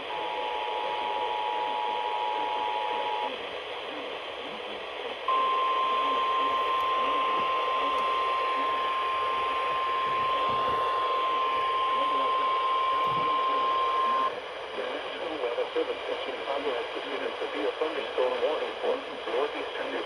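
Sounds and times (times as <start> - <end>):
radio static: 0.0 - 20.0
two-tone attention signal: 5.3 - 14.3.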